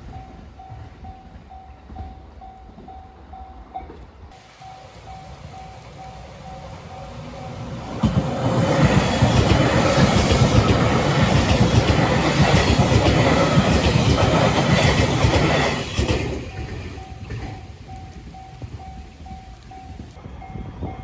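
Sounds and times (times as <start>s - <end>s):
level crossing warning bell: 4.4s - 20.2s
train wheels clattering on rail joints: 4.4s - 20.2s.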